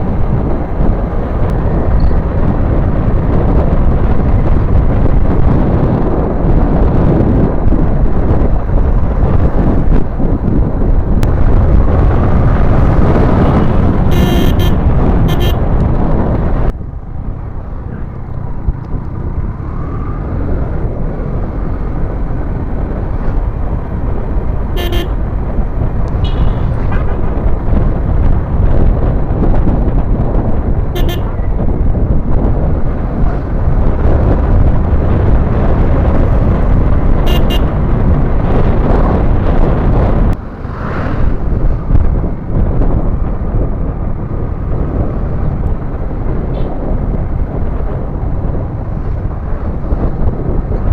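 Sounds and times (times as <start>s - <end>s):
wind buffeting microphone: 0.0s - 50.9s
vehicle horn toots: 14.1s - 15.7s, 24.8s - 25.2s, 26.2s - 27.2s, 30.9s - 31.4s, 37.2s - 37.8s.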